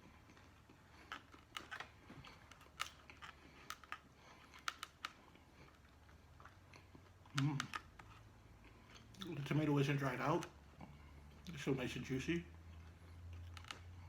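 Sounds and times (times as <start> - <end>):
person chewing food: 0.0 - 9.4, 12.5 - 14.0.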